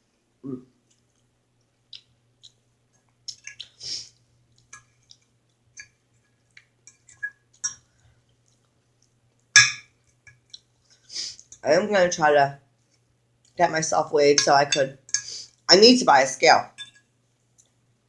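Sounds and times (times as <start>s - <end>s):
wet chewing and mouth clicks: 0.8s - 11.6s, 12.9s - 13.6s, 17.4s - 17.9s.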